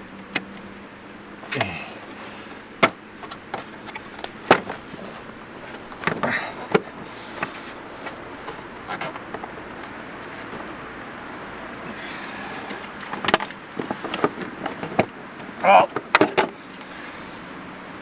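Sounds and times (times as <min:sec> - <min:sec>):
plastic clicks and knocks: 0:02.8 - 0:10.8, 0:12.7 - 0:16.6.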